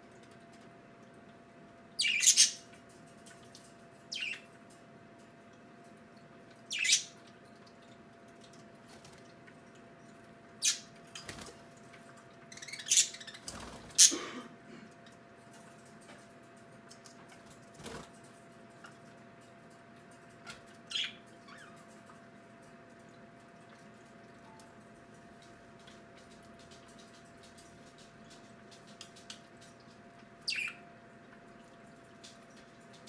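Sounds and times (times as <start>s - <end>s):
budgerigars chirping: 2.0s - 2.6s, 6.7s - 7.1s, 30.5s - 30.8s.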